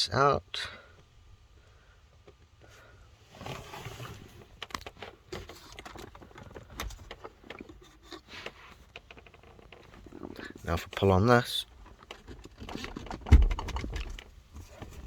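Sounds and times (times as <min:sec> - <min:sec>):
rustling scrape: 0:03.2 - 0:04.6
sharp clicks and knocks: 0:11.7 - 0:14.3.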